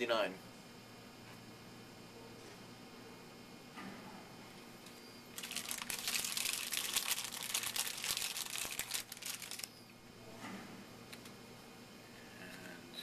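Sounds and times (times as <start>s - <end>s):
foil wrapper tearing and crinkling: 5.3s - 9.7s.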